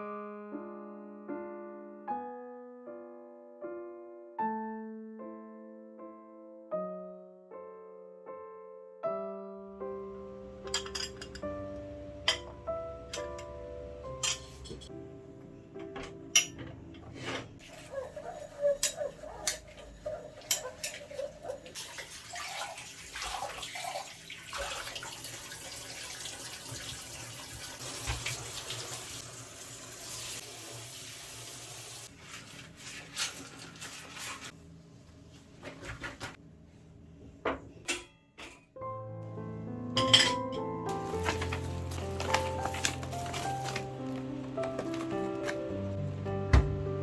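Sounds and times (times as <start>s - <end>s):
dishes clinking and knocking: 10.7s - 11.5s, 12.3s - 13.5s, 14.2s - 14.9s, 15.8s - 21.9s, 40.0s - 45.6s
tap water running into sink: 19.7s - 32.1s.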